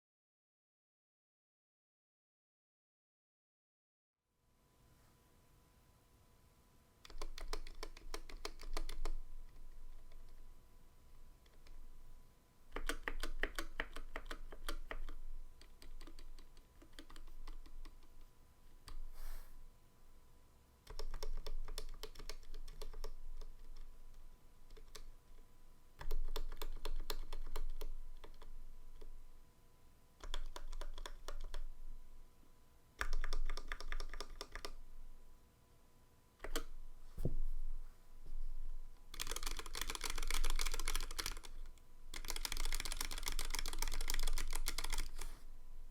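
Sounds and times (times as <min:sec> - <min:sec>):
mechanical keyboard typing: 0:07.0 - 0:10.4, 0:12.7 - 0:18.2, 0:20.9 - 0:23.9, 0:24.7 - 0:25.1, 0:26.0 - 0:29.1, 0:30.2 - 0:31.7, 0:33.0 - 0:34.8, 0:36.4 - 0:36.7, 0:39.1 - 0:45.3.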